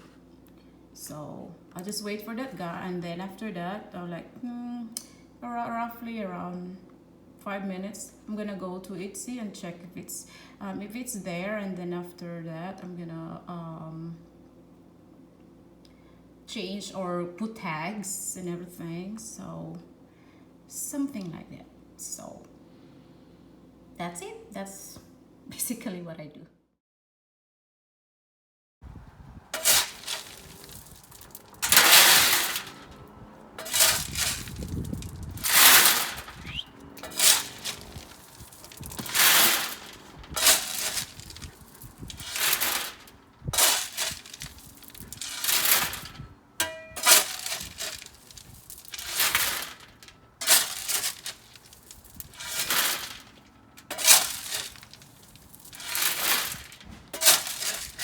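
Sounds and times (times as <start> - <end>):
shovel scraping gravel: 29.5 - 58.0.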